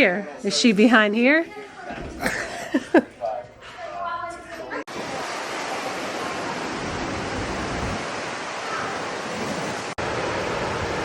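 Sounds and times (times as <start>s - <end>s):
ocean surf rushing: 4.9s - 11.0s.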